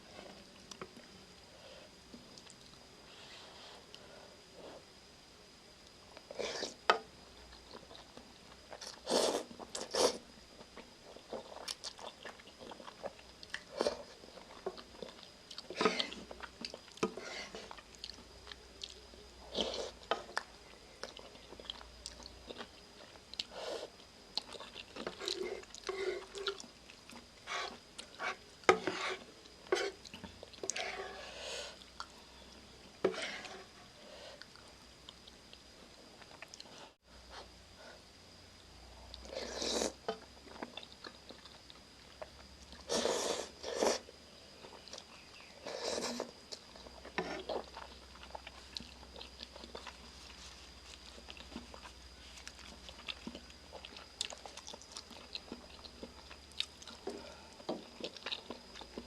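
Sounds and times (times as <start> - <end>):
wet chewing and mouth smacks: 46.5 - 59.0.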